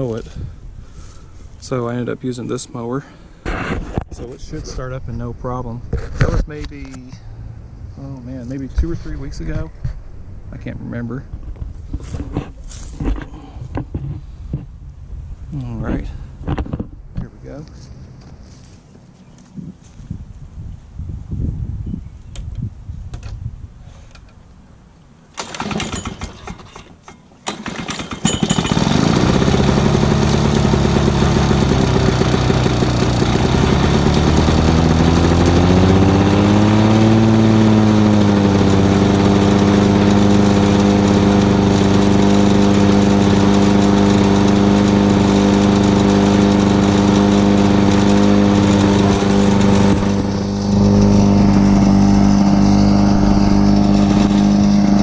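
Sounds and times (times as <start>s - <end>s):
mower engine pull-started: 25.3s - 55.0s.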